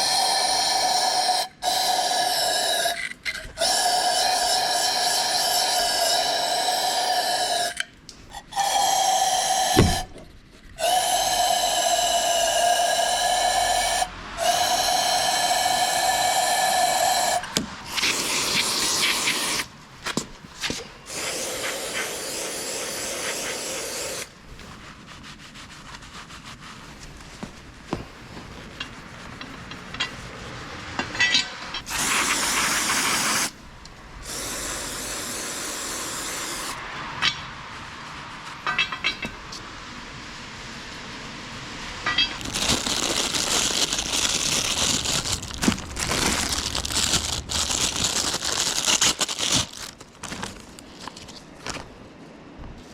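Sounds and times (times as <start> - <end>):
spraying hiss: 0.0 - 3.0, 3.6 - 7.8, 8.5 - 10.2, 10.8 - 19.7, 20.6 - 24.4, 31.9 - 33.6, 34.2 - 36.8.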